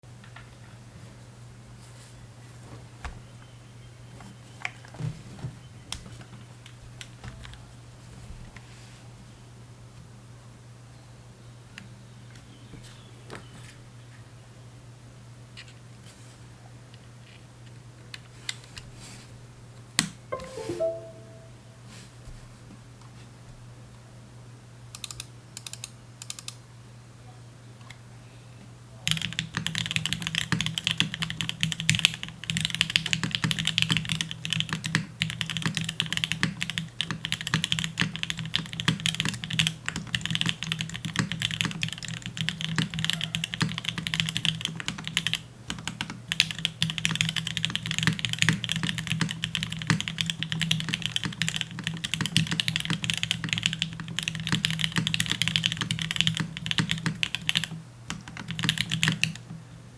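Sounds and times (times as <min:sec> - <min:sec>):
mechanical keyboard typing: 0:29.1 - 0:59.4.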